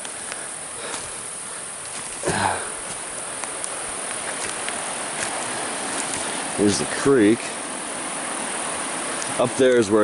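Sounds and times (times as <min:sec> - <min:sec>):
forest ambience hiss: 0:00.0 - 0:10.0.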